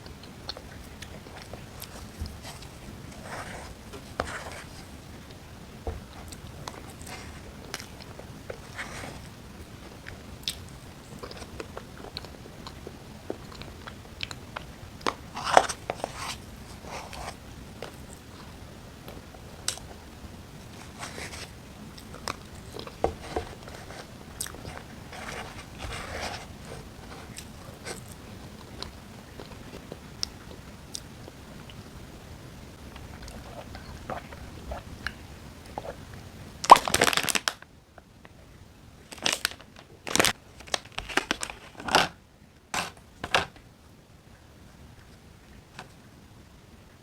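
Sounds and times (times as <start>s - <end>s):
person chewing food: 20.7s - 31.8s, 32.8s - 36.8s.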